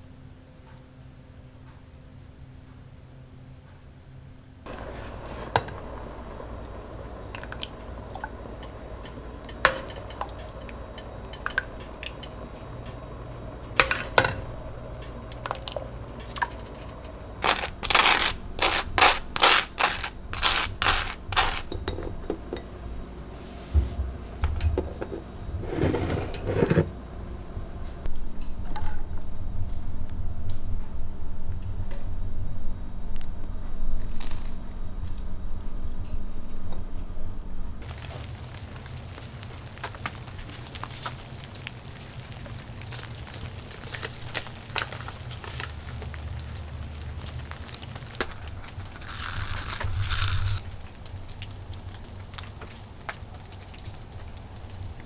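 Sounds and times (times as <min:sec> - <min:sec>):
utensils and dishes clinking: 0:16.4 - 0:22.7
scraping strokes: 0:17.4 - 0:21.7, 0:48.3 - 0:50.6.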